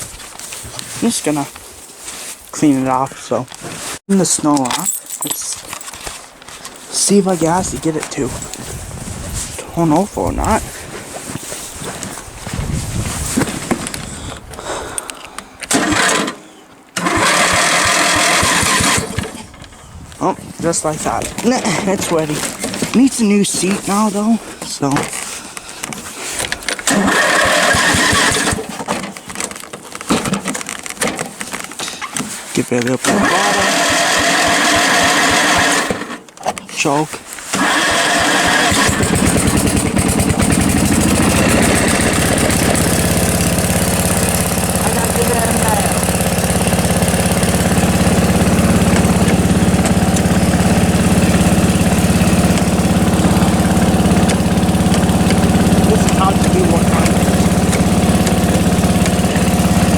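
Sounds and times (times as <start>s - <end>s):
engine cranking on starter: 13.3s - 25.4s, 26.3s - 29.2s, 32.8s - 59.9s.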